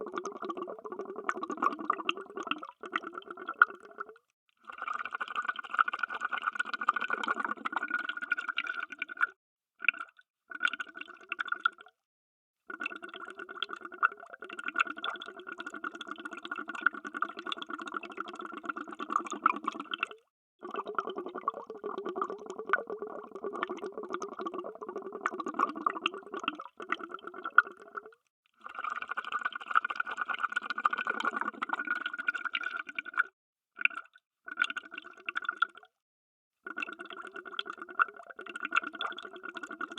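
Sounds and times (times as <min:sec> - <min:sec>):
underwater bubbling: 0:00.0 - 0:04.2, 0:12.8 - 0:28.2, 0:30.5 - 0:33.2.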